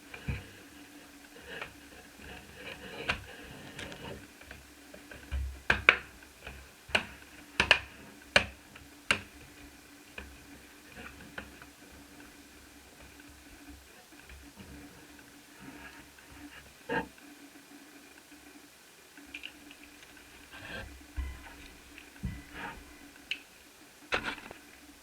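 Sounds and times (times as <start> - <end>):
laptop parts clicking and tapping: 3.8 - 9.5.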